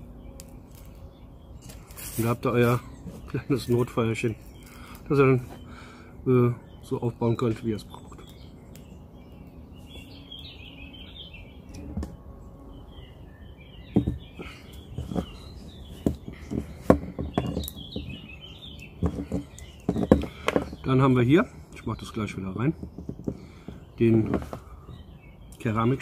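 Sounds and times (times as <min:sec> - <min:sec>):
small birds chirping: 0:00.0 - 0:26.0
sharp clicks and knocks: 0:16.0 - 0:20.9, 0:22.7 - 0:25.0.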